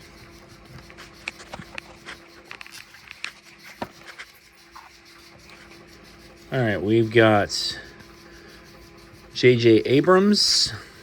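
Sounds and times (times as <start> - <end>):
trading cards sliding together: 0.3 - 6.3.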